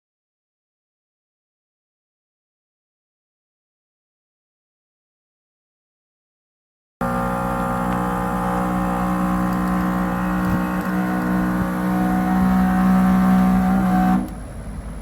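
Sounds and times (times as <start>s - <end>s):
air conditioner humming: 7.0s - 15.0s.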